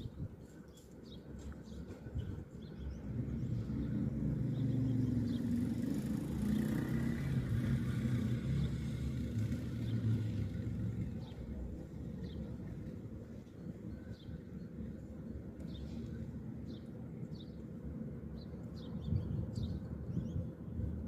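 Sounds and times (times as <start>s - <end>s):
faint sparrow chirps: 0.0s - 6.5s, 8.6s - 20.9s
vehicle engine rumbling: 2.0s - 17.0s.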